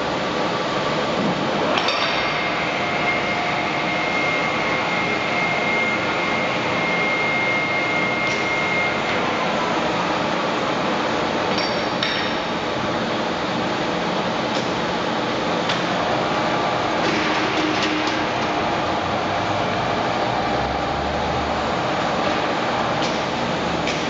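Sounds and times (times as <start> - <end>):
steady machine noise: 1.8 - 11.0, 16.0 - 24.0
high ringing tone: 2.8 - 9.4.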